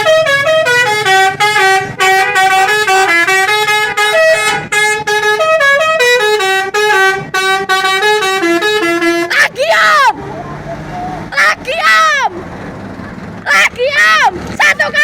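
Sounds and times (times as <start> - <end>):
musical bus horn melody: 0.0 - 9.4.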